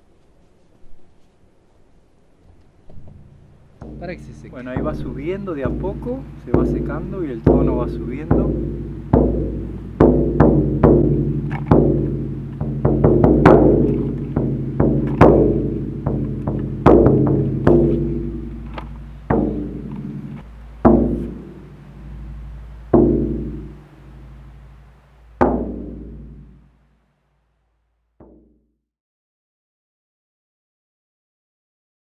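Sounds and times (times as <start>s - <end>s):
leather drum being struck: 2.9s - 24.4s, 25.4s - 26.7s, 28.2s - 28.6s.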